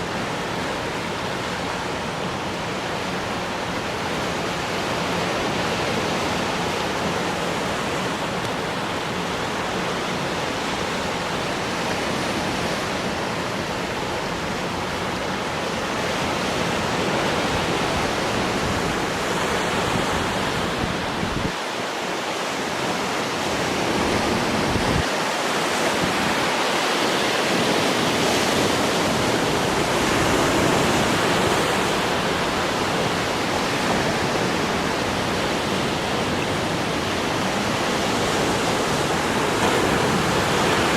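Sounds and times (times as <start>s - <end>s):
sea waves breaking: 0.0s - 40.9s.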